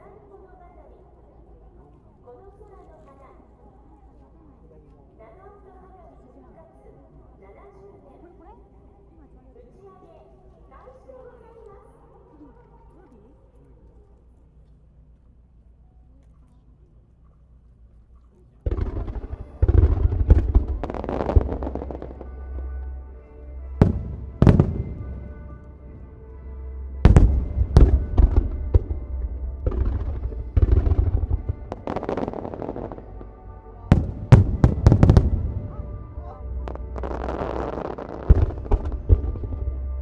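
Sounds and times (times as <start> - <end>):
firework shells bursting: 18.7 - 22.7, 23.8 - 26.4, 27.0 - 33.2, 33.9 - 39.7
music with held tones: 18.9 - 40.0.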